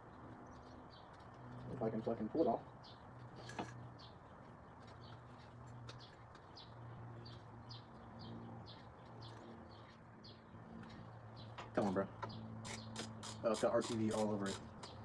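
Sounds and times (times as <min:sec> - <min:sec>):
bird chirping: 0:02.5 - 0:13.3.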